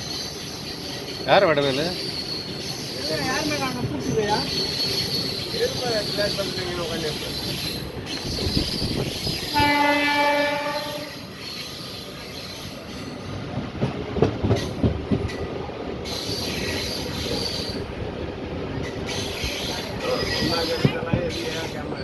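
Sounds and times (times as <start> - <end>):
high squeal of wheels: 0.0 - 9.9, 10.8 - 13.4, 16.0 - 17.9, 18.8 - 22.0
train running on track: 0.0 - 22.0
train horn: 9.4 - 11.3.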